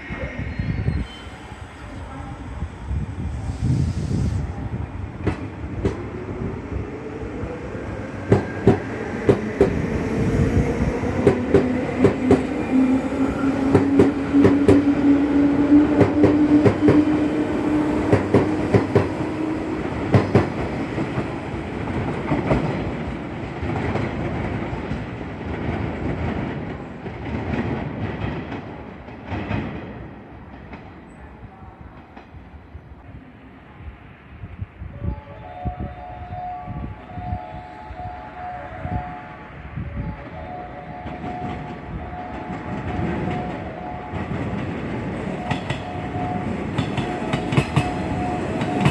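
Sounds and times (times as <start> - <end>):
train wheels clicking on rails: 5.2 - 6.2, 8.2 - 31.0, 41.0 - 48.9.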